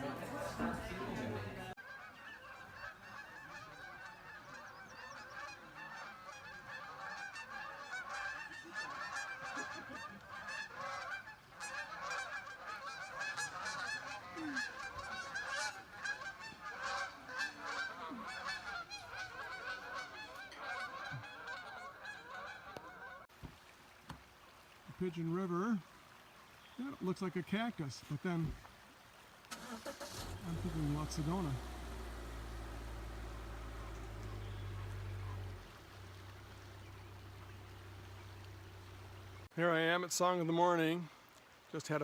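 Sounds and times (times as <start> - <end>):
geese honking: 0.0 - 23.3, 29.5 - 39.5.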